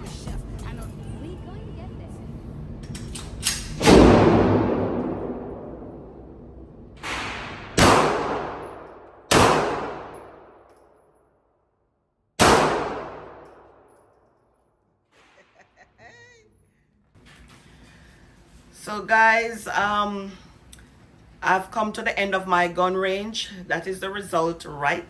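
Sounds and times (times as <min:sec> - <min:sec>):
gunshots echoing indoors: 0:03.5 - 0:11.0, 0:12.4 - 0:14.2.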